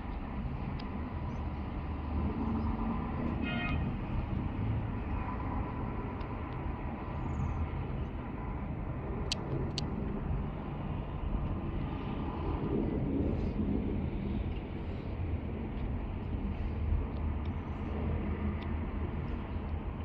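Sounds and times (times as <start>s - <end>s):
low outdoor rumble: 0.0s - 20.0s
sharp clicks: 9.2s - 9.9s.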